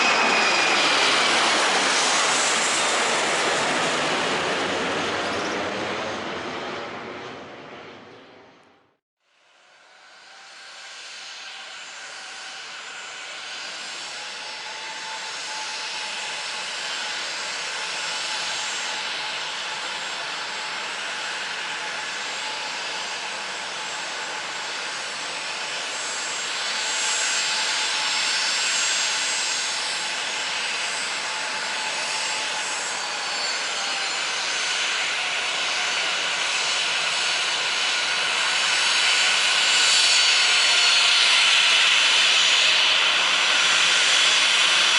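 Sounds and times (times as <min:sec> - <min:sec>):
jet engines whining and roaring: 0:00.0 - 0:44.9.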